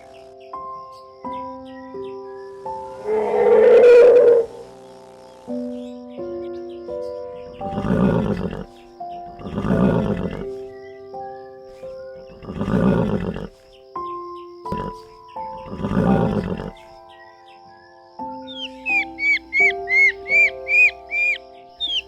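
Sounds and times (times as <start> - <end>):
music with slow held notes: 0.0 - 22.0
animal calling roughly: 7.6 - 10.5, 12.3 - 13.6, 14.7 - 16.9, 18.6 - 22.0.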